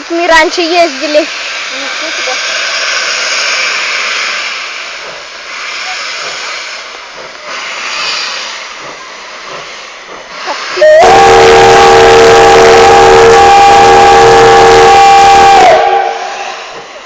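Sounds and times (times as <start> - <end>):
steam locomotive whistle: 10.6 - 16.9.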